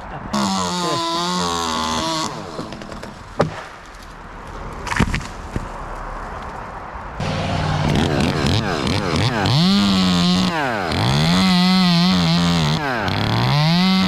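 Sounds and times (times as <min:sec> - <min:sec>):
chainsaw running: 0:00.3 - 0:03.1, 0:07.2 - 0:14.0.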